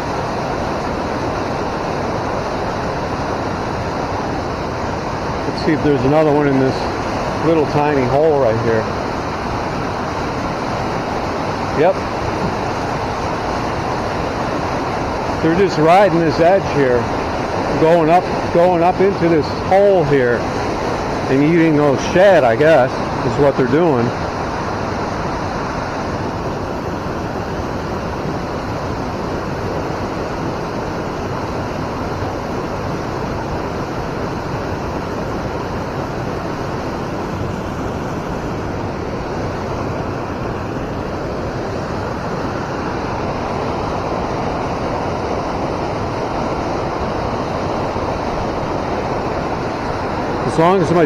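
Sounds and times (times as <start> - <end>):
river water rushing: 0.0 - 51.0.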